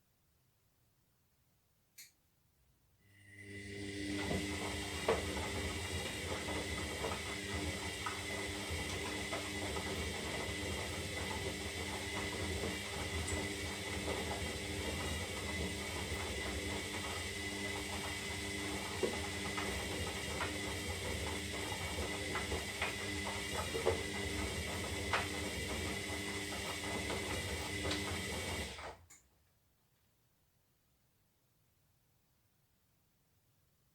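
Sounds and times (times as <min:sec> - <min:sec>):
washing machine motor whine: 0:03.2 - 0:29.0.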